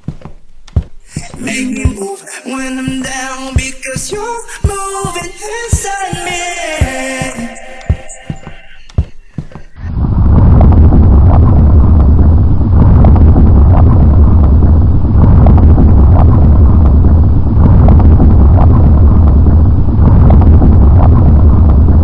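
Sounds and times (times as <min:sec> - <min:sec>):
low rumble and rushing noise: 0:09.7 - 0:22.0.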